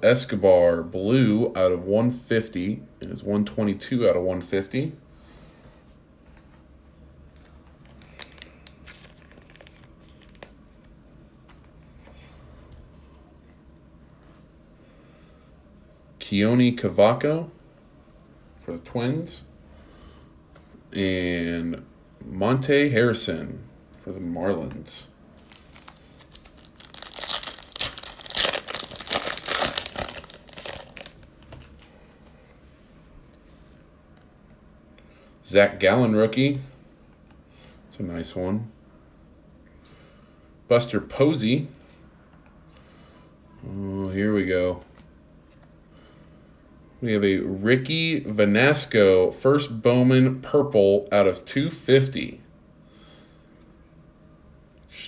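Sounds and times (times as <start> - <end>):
cards and wrappers crinkling: 7.7 - 10.6, 25.4 - 32.0
soft rustling: 25.4 - 32.3.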